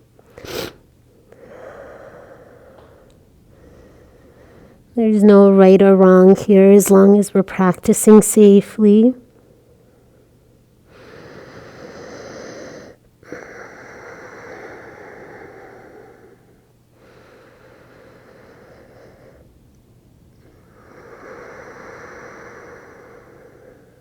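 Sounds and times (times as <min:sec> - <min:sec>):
person breathing deeply: 0:00.4 - 0:04.9, 0:09.5 - 0:19.5, 0:20.6 - 0:24.0.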